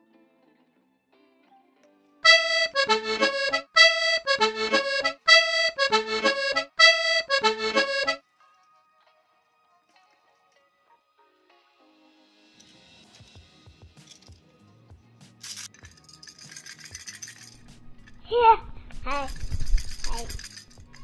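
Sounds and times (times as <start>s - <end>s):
short tune of pitched notes: 2.2s - 8.2s.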